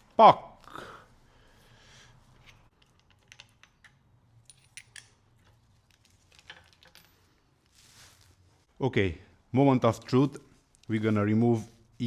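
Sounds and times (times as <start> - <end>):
light clicks of metal parts: 2.4 - 7.4.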